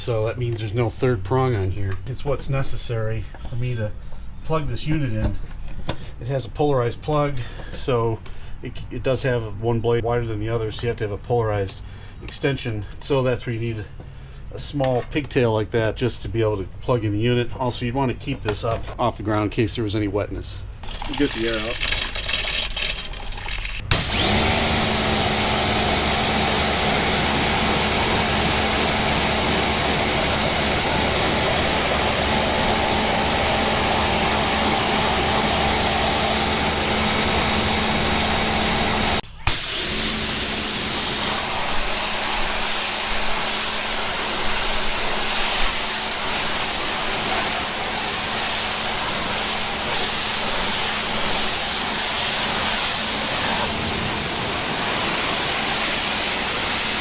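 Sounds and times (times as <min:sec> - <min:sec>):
pressure washer running: 0:20.8 - 0:57.0
water spraying hiss: 0:20.8 - 0:57.0.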